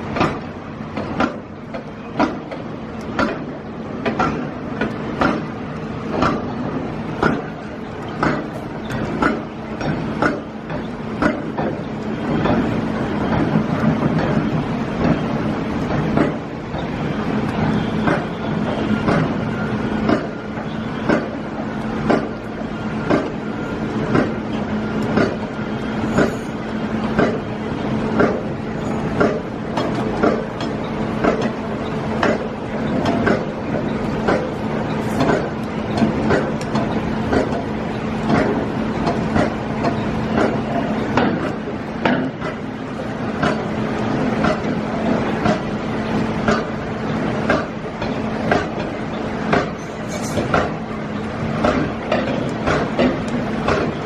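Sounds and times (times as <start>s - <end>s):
sharp knocks and clanks: 0.0s - 6.6s, 7.2s - 15.3s, 16.0s - 16.9s, 17.5s - 18.4s, 19.0s - 19.4s, 20.0s - 21.4s, 22.0s - 22.4s, 23.0s - 23.4s, 24.1s - 27.5s, 28.2s - 31.6s, 32.2s - 42.7s, 43.4s - 43.7s, 44.3s - 44.8s, 45.4s - 45.7s, 46.4s - 46.8s, 47.4s - 50.8s, 51.5s - 54.0s.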